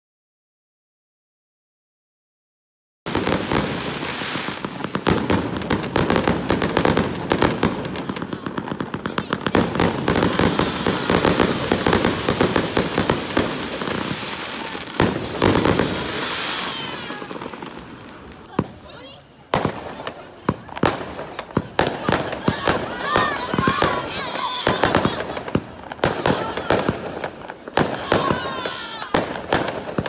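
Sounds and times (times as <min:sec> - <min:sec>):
fireworks bangs and crackles: 0:03.1 - 0:30.0.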